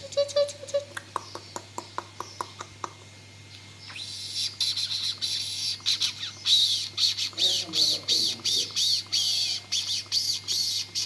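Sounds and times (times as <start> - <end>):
bird chirps and squawks: 3.8 - 11.0.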